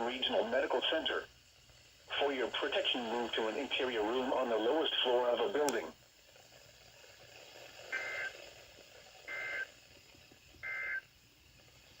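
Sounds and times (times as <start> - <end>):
faint radio hiss: 0.0 - 12.0
two-tone data bursts: 10.6 - 11.0.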